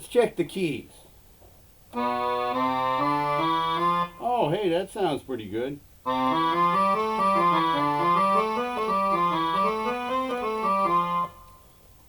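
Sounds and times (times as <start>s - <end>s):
digital accordion melody with chords: 2.0s - 4.4s, 6.0s - 11.7s.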